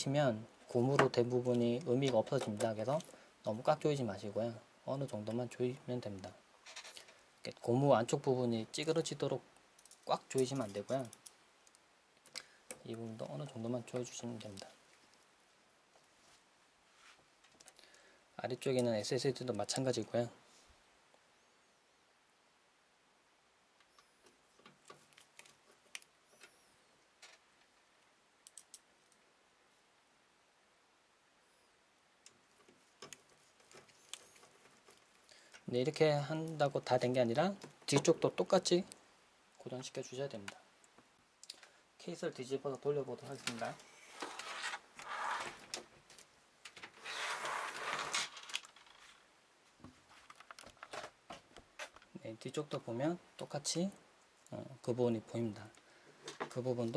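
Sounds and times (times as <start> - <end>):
computer case scraping on table: 47.0 - 48.3.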